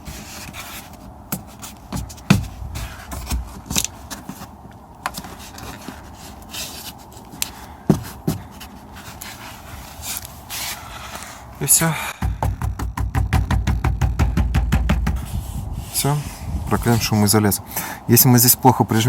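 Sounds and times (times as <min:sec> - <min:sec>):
scraping and rustling: 0:00.0 - 0:11.6, 0:13.6 - 0:17.3
sharp knocks on door panel: 0:12.2 - 0:15.6.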